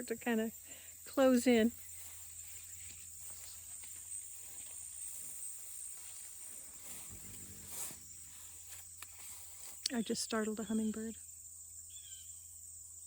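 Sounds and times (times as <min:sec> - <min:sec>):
insect chorus buzzing: 0:00.0 - 0:13.0
faint low rustle: 0:01.7 - 0:09.9.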